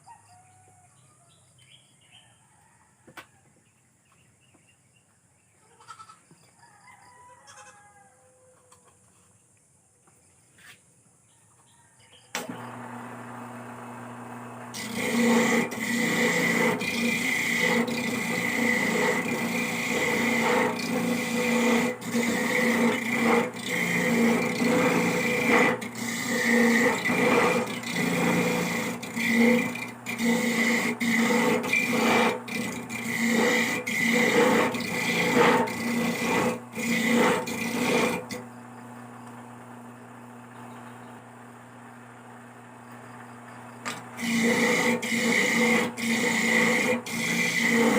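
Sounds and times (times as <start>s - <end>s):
coconut grating rasping: 12.6s - 38.5s, 43.9s - 47.9s.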